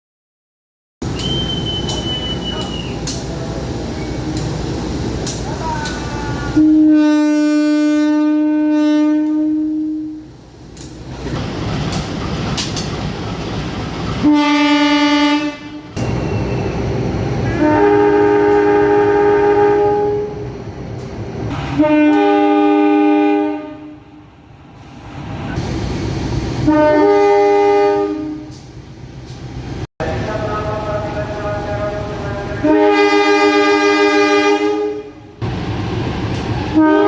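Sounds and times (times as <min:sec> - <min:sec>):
passing train rumble and clatter: 0:01.0 - 0:37.0
locomotive air horn blasts: 0:06.4 - 0:10.3, 0:14.2 - 0:16.0, 0:17.4 - 0:20.5, 0:21.6 - 0:24.2, 0:26.6 - 0:28.6, 0:32.6 - 0:35.3, 0:36.7 - 0:37.0.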